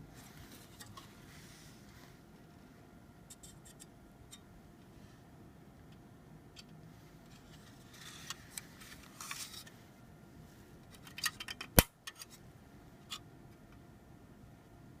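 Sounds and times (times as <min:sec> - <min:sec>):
light scraping of metal parts: 0:00.2 - 0:02.2, 0:06.6 - 0:09.8, 0:10.8 - 0:13.2.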